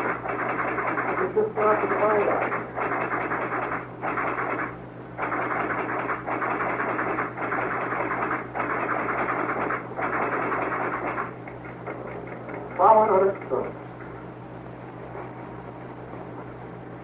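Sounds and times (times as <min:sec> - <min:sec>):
telegraph equipment clattering: 0:00.0 - 0:14.2
low hum: 0:00.0 - 0:17.0.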